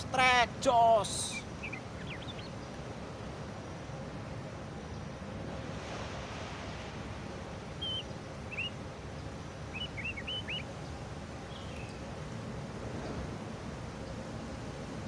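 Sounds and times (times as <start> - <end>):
outdoor background hiss: 0.0 - 15.0
small songbird chirping: 1.3 - 2.8, 7.7 - 12.1.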